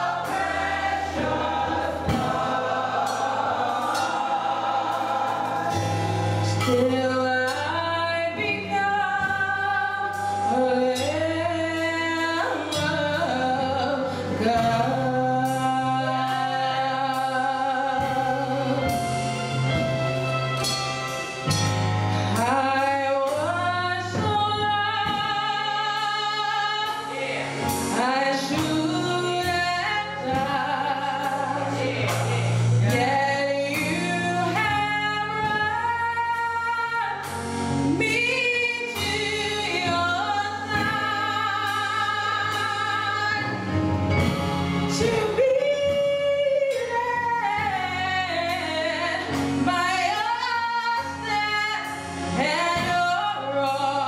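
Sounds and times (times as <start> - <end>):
gospel choir singing: 0.0 - 45.1
instrumental accompaniment: 0.0 - 54.0
woman singing lead: 22.2 - 44.3.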